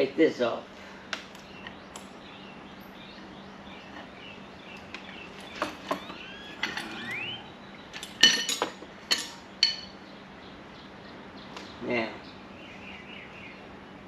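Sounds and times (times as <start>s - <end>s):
metallic clinks and knocks of tools: 8.0s - 9.9s.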